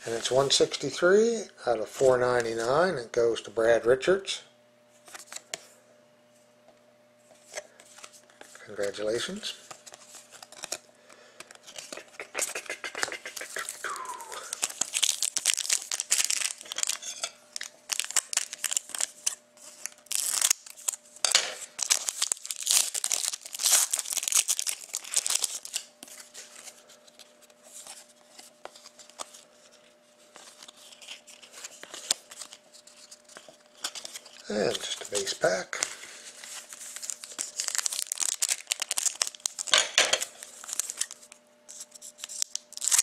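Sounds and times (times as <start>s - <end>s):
foil wrapper tearing and crinkling: 11.6s - 21.0s, 21.6s - 26.7s, 30.5s - 43.0s.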